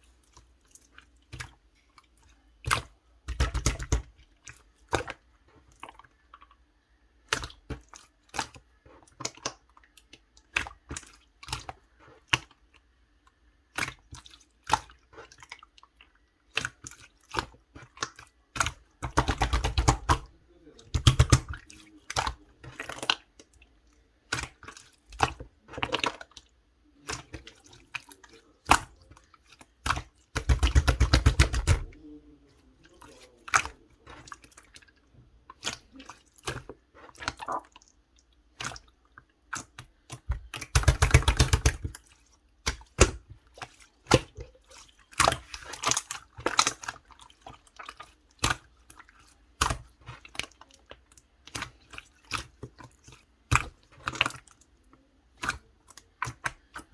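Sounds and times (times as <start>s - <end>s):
rapid wet crackling: 0.0s - 6.6s, 7.2s - 56.9s
slime squished by hand: 2.6s - 5.2s, 16.5s - 23.6s, 24.3s - 37.9s, 39.5s - 56.9s.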